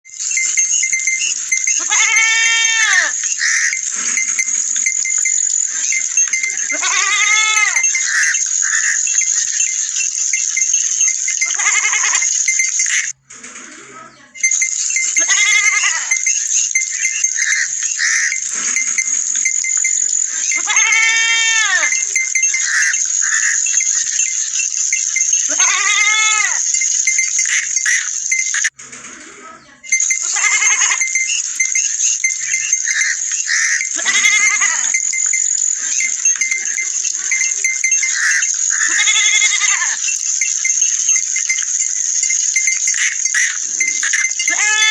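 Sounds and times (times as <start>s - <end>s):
livestock bleating: 1.8s - 3.7s, 6.7s - 9.0s, 11.4s - 12.3s, 15.2s - 16.1s, 20.6s - 22.1s, 22.7s - 23.6s, 25.5s - 26.6s, 30.3s - 31.1s, 33.6s - 35.0s, 38.7s - 40.0s, 44.4s - 44.9s.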